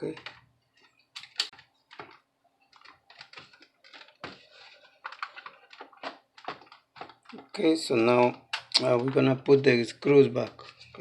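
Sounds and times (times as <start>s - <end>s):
clicks and taps of laptop parts: 5.0s - 7.5s.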